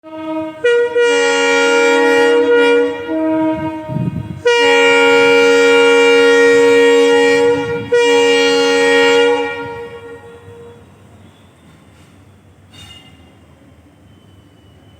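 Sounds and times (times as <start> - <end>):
locomotive air horn blasts: 0.0 - 10.9.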